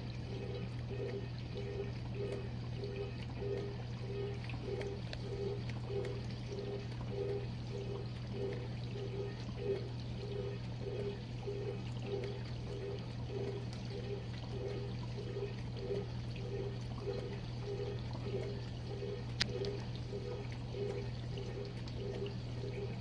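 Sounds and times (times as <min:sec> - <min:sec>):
regular pulsing tone: 0:00.0 - 0:23.0
wash pump hum: 0:00.0 - 0:23.0
water spraying inside dishwasher: 0:00.0 - 0:23.0.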